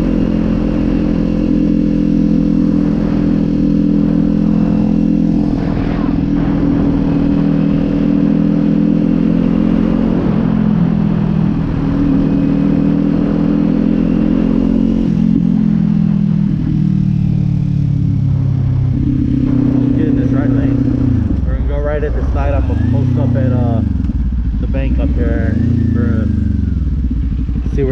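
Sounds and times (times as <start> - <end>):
motorcycle engine running: 0.0 - 27.9.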